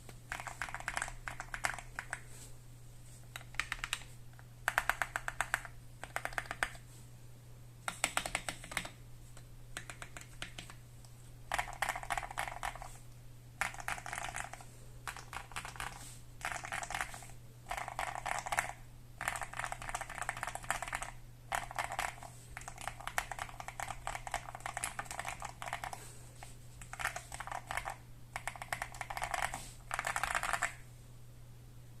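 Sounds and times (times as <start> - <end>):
faint steady hum: 0.0 - 32.0
mechanical keyboard typing: 0.3 - 2.2, 3.4 - 4.0, 4.6 - 6.8, 7.9 - 9.0, 9.8 - 10.8, 11.5 - 13.0, 13.6 - 26.0, 26.8 - 30.8.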